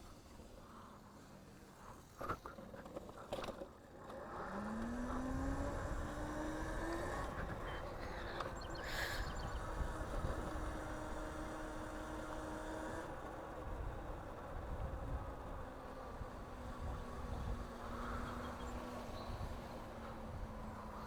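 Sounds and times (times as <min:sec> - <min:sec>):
electric scooter motor whine: 0:02.8 - 0:21.0
wind and road noise: 0:02.9 - 0:21.0.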